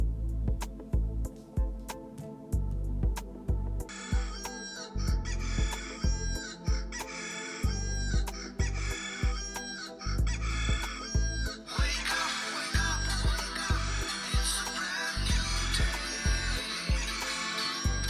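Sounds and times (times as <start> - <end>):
music beat with thudding bass: 0.0 - 2.0, 2.6 - 9.6, 10.2 - 12.2, 12.8 - 14.7, 15.3 - 17.3
rooster crowing ringtone: 3.9 - 11.3.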